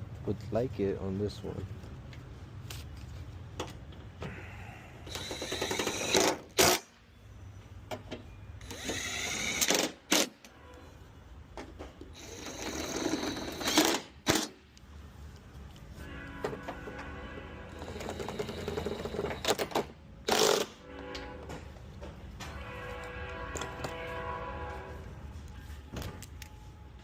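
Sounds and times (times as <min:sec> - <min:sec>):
power tool motor whirring: 0:05.1 - 0:06.8, 0:08.6 - 0:10.3, 0:12.2 - 0:14.5.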